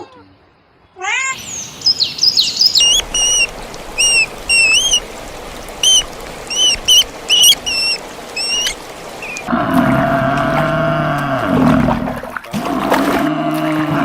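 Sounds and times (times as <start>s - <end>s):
small animal chirping: 1.4s - 9.5s.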